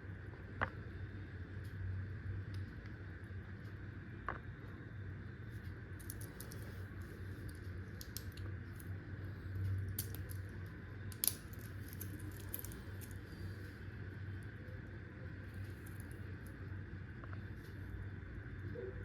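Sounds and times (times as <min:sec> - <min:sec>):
steady low hum: 0:00.0 - 0:19.0
metal watch bracelet clinking: 0:11.1 - 0:13.3.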